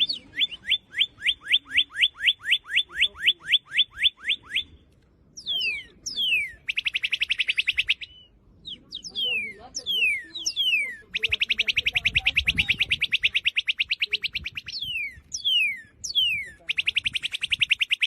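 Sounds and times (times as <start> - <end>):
fast warbling pulses: 9.4 - 18.0.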